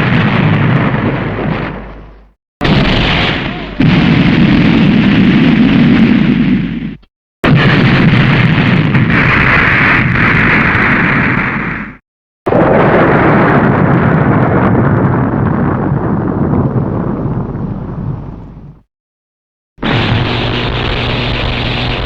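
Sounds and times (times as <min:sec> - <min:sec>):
rumbling explosions: 0:00.0 - 0:18.9, 0:19.8 - 0:22.0.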